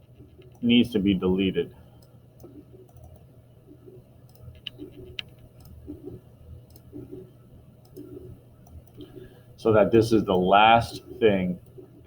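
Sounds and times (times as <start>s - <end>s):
mouse and keyboard clicks: 4.3s - 7.2s.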